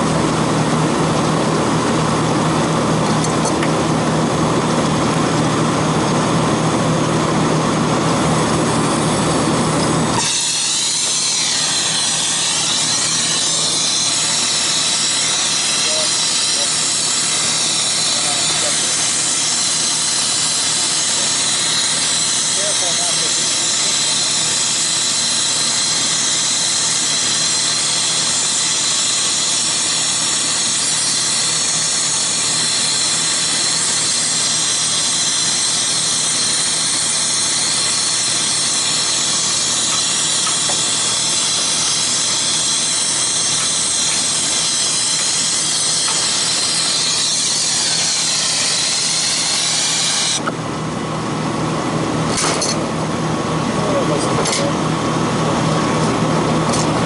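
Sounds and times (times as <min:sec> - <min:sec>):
equipment humming: 0:00.0 - 0:57.0
torch flame hissing: 0:05.4 - 0:50.5.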